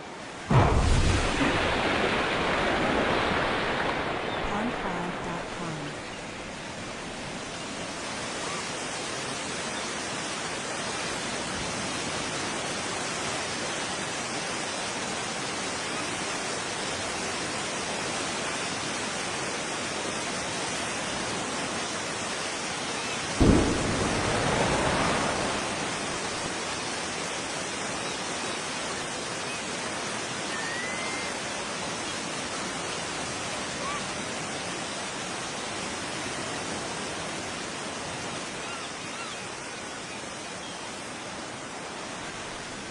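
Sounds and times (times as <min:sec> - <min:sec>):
explosion boom: 0:00.5 - 0:02.8, 0:23.4 - 0:26.8
steady rushing noise: 0:23.4 - 0:28.1.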